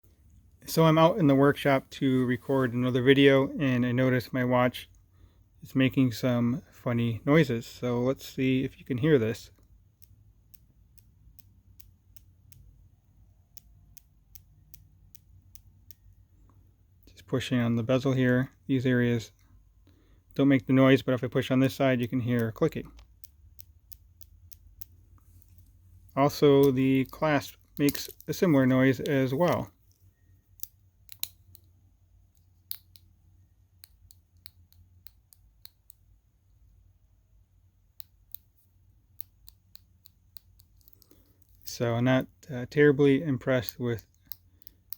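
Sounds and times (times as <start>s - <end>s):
watch bezel clicking: 9.5s - 16.6s, 21.1s - 36.2s, 37.9s - 41.7s, 43.5s - 44.9s
watch bracelet clasp clicking: 30.6s - 31.7s, 32.4s - 33.1s.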